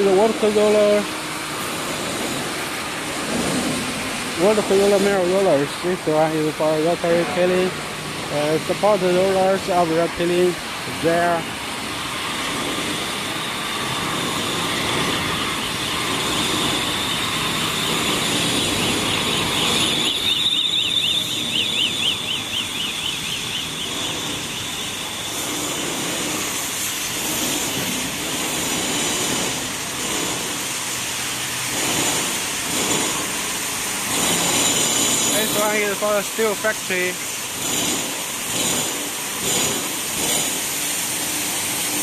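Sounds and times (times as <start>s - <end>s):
workshop machinery din: 0.0s - 42.0s
high warbling tone: 16.8s - 25.4s.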